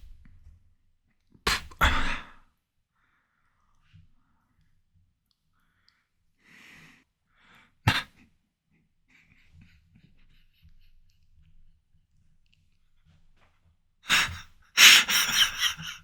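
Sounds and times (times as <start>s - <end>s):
person breathing: 3.0s - 3.6s, 5.6s - 7.8s, 14.1s - 16.0s.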